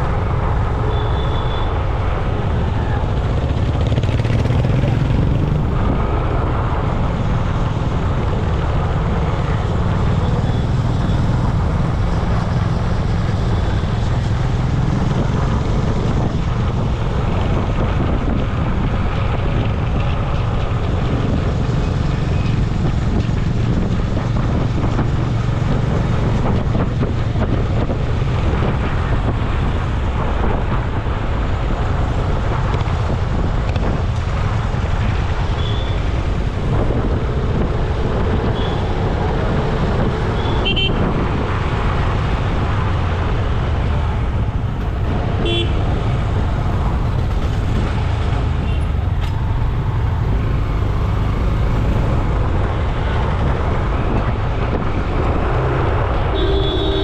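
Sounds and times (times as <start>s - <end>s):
road traffic passing: 0.0s - 57.0s
vehicle horn toots: 40.4s - 41.0s, 45.4s - 45.8s, 56.3s - 57.0s.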